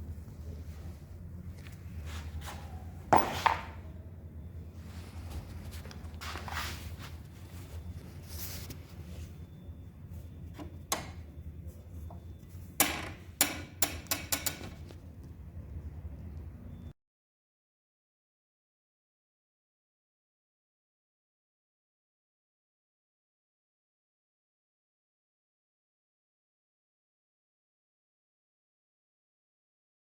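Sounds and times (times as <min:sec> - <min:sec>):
steady low hum: 0:00.0 - 0:17.0
tools clicking and knocking on workbench: 0:03.2 - 0:03.8, 0:12.8 - 0:14.9.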